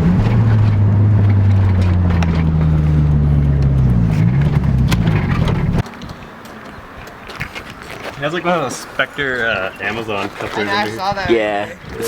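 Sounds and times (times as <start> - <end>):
car engine droning from cabin: 0.0 - 5.8.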